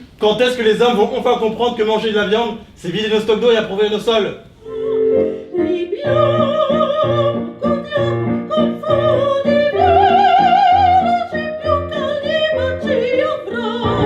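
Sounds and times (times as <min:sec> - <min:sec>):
soprano singing opera: 0:04.7 - 0:14.0.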